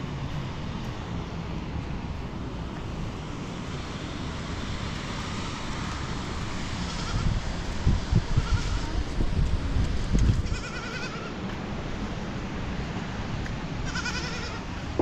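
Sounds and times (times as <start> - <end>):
goats bleating: 10.4 - 11.4, 13.9 - 14.7.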